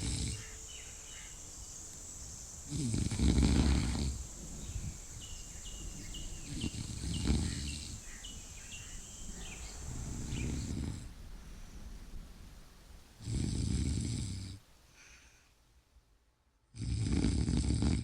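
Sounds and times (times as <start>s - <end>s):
person snoring: 0.0s - 0.4s, 2.7s - 4.2s, 13.2s - 14.6s, 16.8s - 18.0s
steady high hiss: 0.0s - 18.0s.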